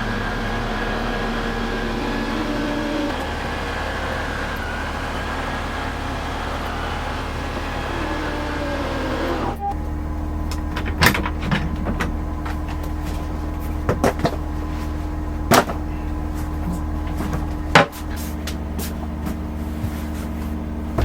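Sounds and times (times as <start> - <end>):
steady low hum: 0.0 - 21.0
sharp clicks and knocks: 9.8 - 13.2.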